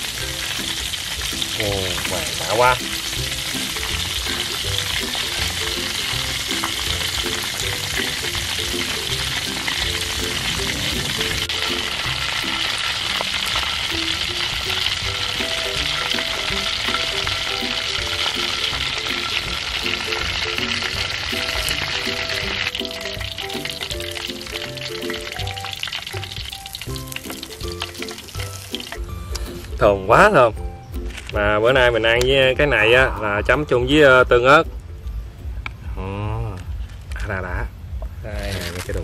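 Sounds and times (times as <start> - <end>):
chicken deep-frying in oil: 0.0 - 29.8.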